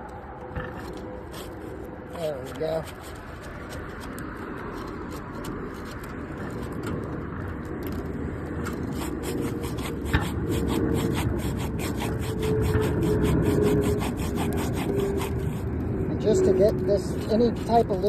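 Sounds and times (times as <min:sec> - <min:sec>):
tool scraping roof shingles: 0:00.0 - 0:18.0.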